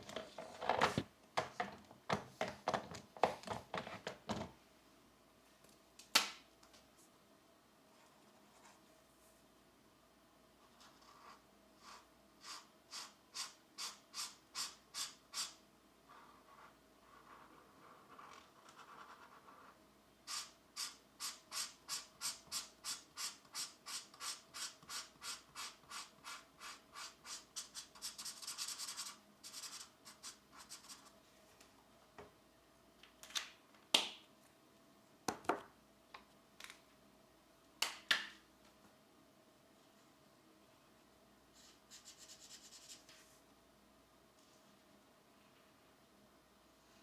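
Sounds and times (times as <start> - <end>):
pencil scratching on paper: 10.8 - 31.1, 41.6 - 43.1.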